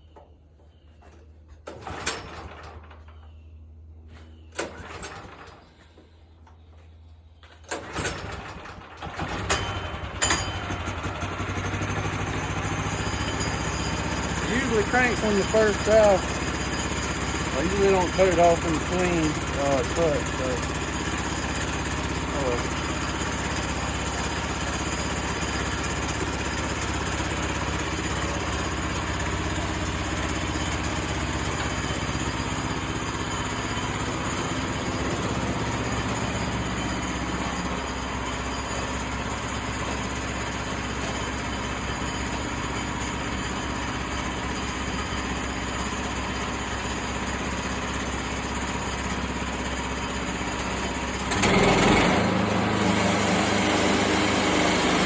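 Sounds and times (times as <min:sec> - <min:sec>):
sawmill engine running: 0:01.6 - 0:03.1, 0:04.6 - 0:06.0, 0:07.7 - 0:55.0
saw blade cutting log: 0:51.4 - 0:55.0.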